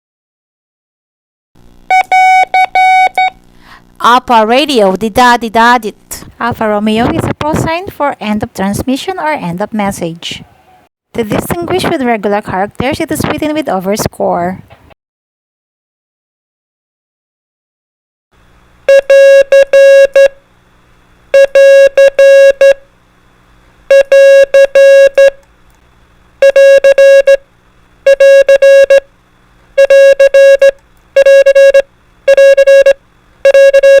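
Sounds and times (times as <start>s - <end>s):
morse code beeping: 1.9s - 3.4s, 18.9s - 20.3s, 21.4s - 22.8s, 23.9s - 25.4s, 26.4s - 27.4s, 28.1s - 29.0s, 29.8s - 34.0s.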